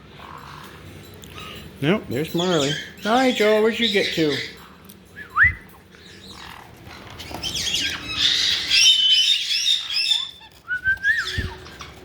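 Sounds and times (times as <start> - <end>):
parrots chirping: 0.0 - 12.0
parrot whistled call: 7.5 - 11.8.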